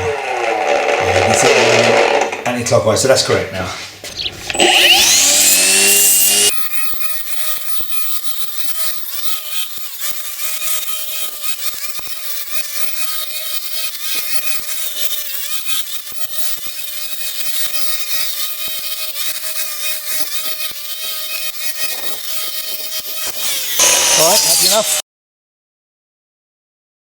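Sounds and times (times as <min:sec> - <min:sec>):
strimmer motor whining: 0:00.0 - 0:02.5, 0:04.0 - 0:25.0
sharp ticks: 0:04.1 - 0:24.9.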